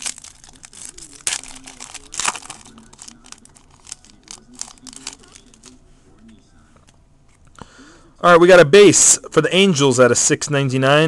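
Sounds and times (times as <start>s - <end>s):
wrapper tearing and crinkling: 0.0s - 5.7s.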